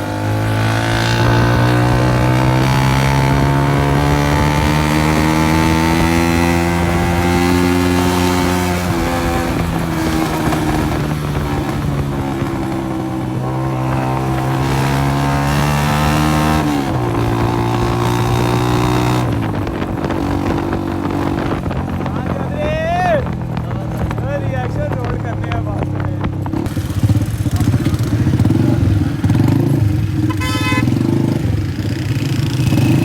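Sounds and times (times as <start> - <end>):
loud motorcycle engine straight pipe: 26.7 - 33.0.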